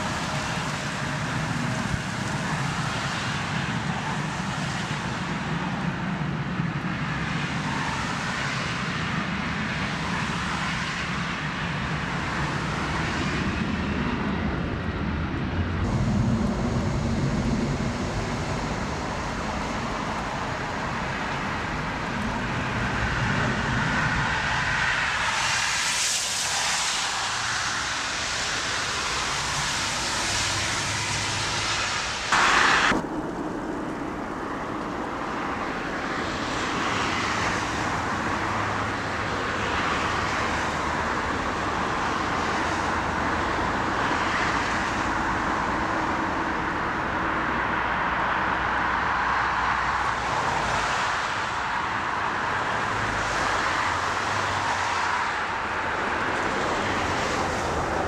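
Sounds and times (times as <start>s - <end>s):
jet engines rushing: 0.0s - 58.0s.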